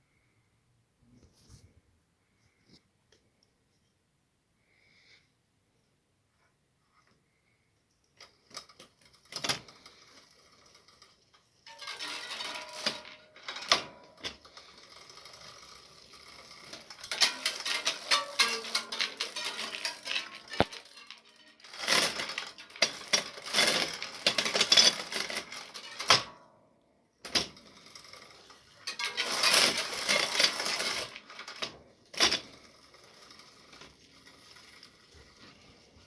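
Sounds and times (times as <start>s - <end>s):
bike clicking and rattling: 8.2s - 26.5s, 27.2s - 36.0s.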